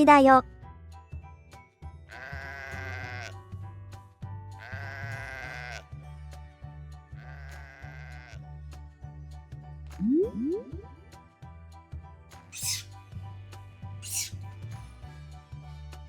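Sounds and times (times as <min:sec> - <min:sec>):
light background music: 0:00.0 - 0:16.0
sheep bleating: 0:02.2 - 0:03.3, 0:04.6 - 0:05.8, 0:07.2 - 0:08.4.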